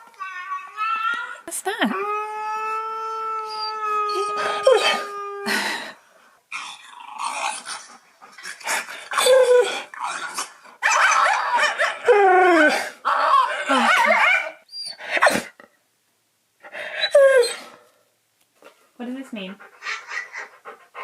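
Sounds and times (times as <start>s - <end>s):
dog growl-whining: 1.3s - 5.8s, 6.5s - 15.6s.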